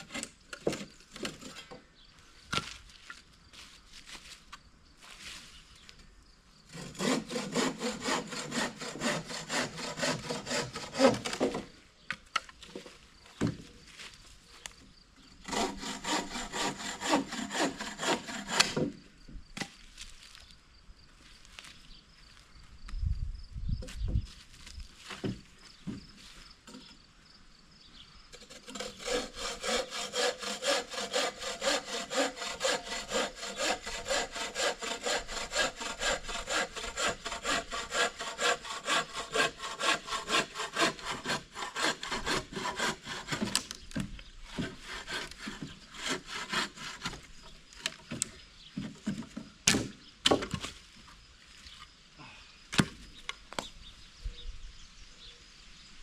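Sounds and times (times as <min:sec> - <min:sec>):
hand saw cutting wood: 0:06.7 - 0:11.7, 0:15.4 - 0:19.0, 0:28.4 - 0:47.4.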